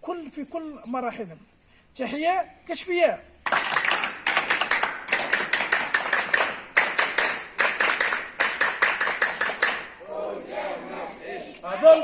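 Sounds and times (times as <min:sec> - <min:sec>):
group of people clapping: 0:03.4 - 0:10.1.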